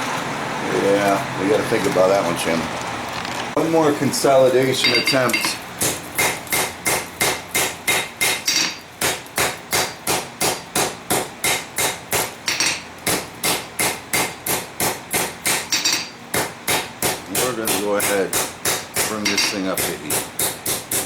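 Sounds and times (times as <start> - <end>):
hammer striking metal on anvil: 4.8 - 21.0.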